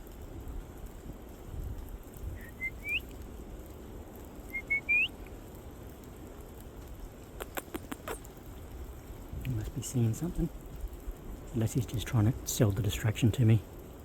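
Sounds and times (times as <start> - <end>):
whistled phrases: 2.4 - 3.0, 4.5 - 5.1.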